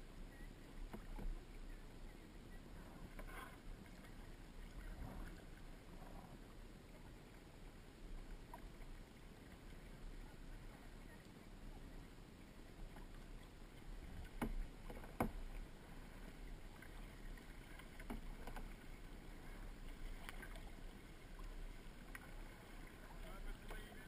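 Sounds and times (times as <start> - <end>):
low steady rumble: 0.0 - 24.0
paddle strokes splashing water: 0.0 - 24.0.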